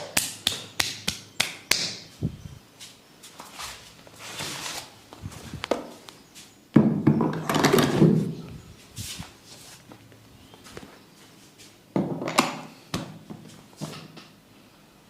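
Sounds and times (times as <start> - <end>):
hands rubbing and patting hair: 0.1 - 6.5, 8.7 - 11.8
loud scuffing rub: 2.8 - 6.5, 8.8 - 10.0.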